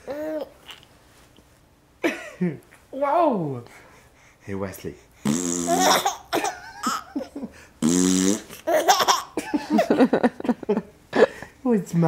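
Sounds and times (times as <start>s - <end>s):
man making raspy vocal noise: 5.2s - 6.1s
baby laughing: 5.6s - 7.6s, 8.4s - 10.3s.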